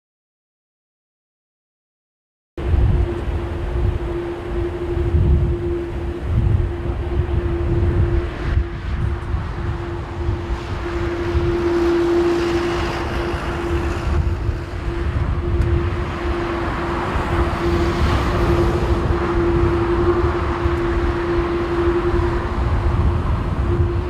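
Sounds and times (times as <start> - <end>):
jet engines running: 2.6 - 24.0.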